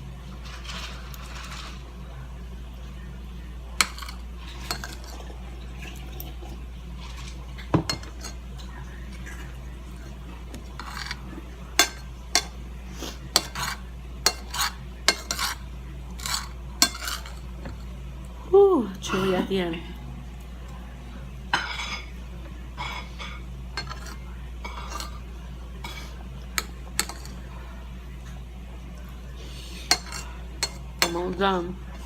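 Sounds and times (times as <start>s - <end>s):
cutlery clinking on a plate: 3.8s - 5.2s, 7.8s - 8.4s, 10.8s - 11.2s, 11.8s - 12.6s, 13.3s - 15.6s, 16.2s - 17.8s, 22.8s - 27.4s, 29.8s - 31.4s.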